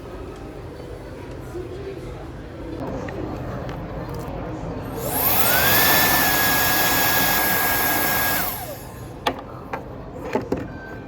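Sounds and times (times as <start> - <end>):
hair dryer motor whine: 5.0 - 9.1.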